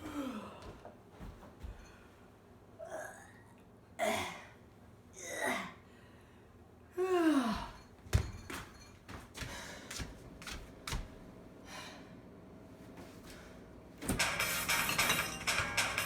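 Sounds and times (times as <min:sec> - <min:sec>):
person sighing: 0:00.0 - 0:00.8.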